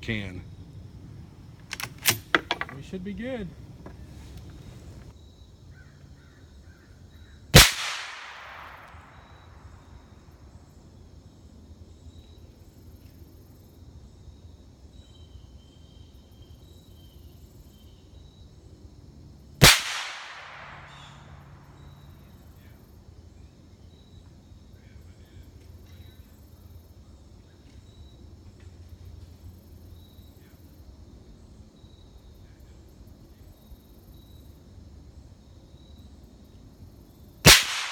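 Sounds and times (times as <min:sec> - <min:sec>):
suppressed rifle shots: 0:07.6 - 0:09.4, 0:19.6 - 0:21.4, 0:37.4 - 0:37.9.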